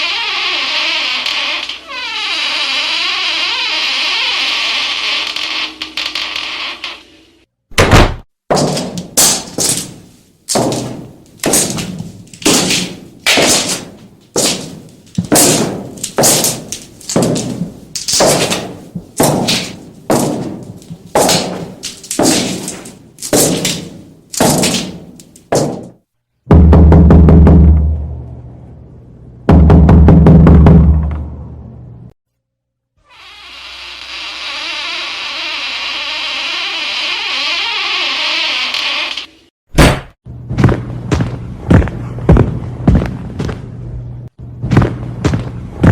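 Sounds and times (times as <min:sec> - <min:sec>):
heavy echoing thuds: 0:07.8 - 0:28.1.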